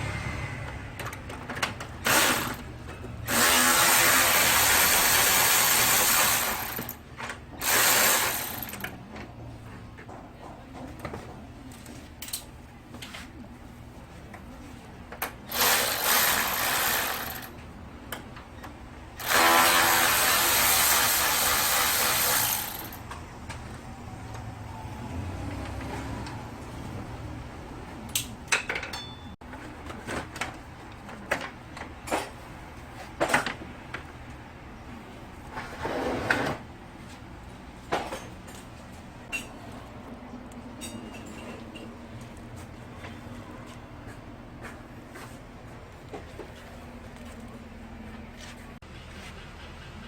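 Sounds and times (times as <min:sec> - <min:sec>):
power tool running: 0:02.0 - 0:02.6, 0:03.3 - 0:07.0, 0:07.6 - 0:08.7, 0:15.5 - 0:17.5, 0:19.2 - 0:23.0.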